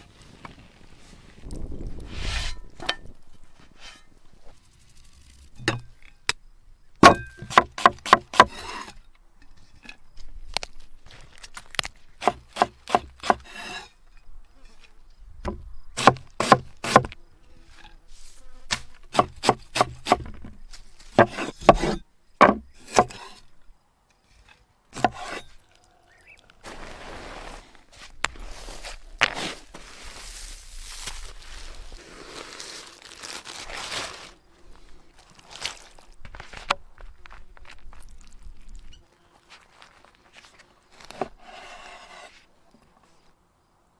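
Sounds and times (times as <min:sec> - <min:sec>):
knife chopping on wooden board: 0:07.0 - 0:08.9, 0:12.2 - 0:13.8, 0:15.5 - 0:17.2, 0:18.7 - 0:20.4, 0:21.2 - 0:23.4, 0:25.0 - 0:25.4.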